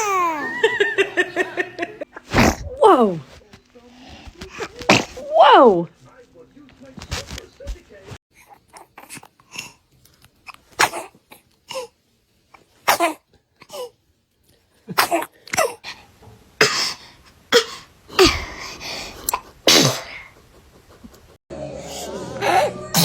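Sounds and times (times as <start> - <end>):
child coughing: 0.0 - 0.6, 12.9 - 13.9, 14.9 - 15.8
child sneezing: 0.0 - 0.6.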